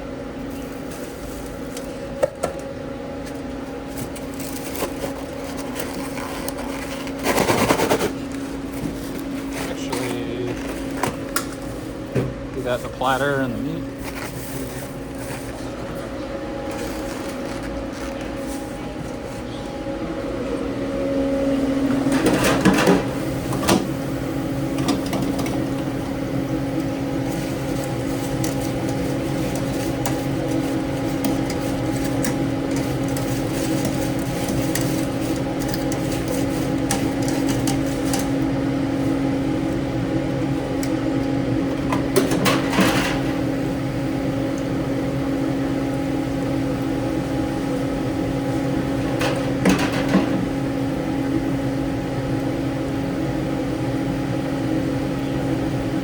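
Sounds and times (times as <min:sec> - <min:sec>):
steady machine hum: 0:00.0 - 0:56.0.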